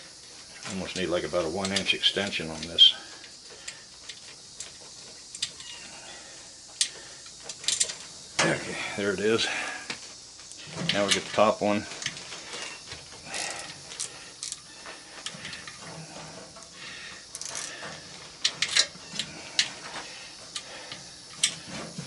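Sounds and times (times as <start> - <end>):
ratchet clicking: 6.8 - 8.0, 16.6 - 18.9.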